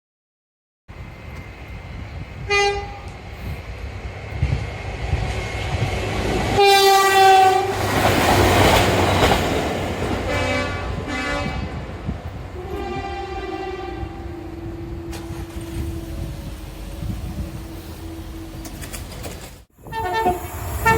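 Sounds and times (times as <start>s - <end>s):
passing train rumble: 0.9s - 20.9s
train horn: 2.5s - 3.1s, 6.6s - 7.8s, 10.2s - 11.8s, 12.6s - 15.9s, 19.8s - 20.9s.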